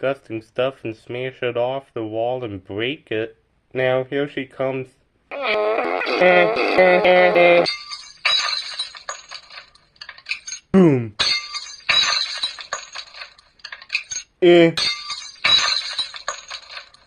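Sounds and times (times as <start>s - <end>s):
glass shattering: 7.7s - 17.0s
person saying boom: 10.8s - 11.2s.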